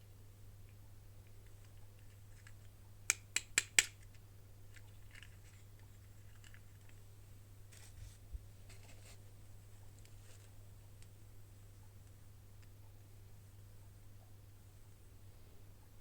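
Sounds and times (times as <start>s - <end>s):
low steady hum: 0.0s - 16.0s
plastic packaging rustling: 4.9s - 7.0s, 7.7s - 9.2s.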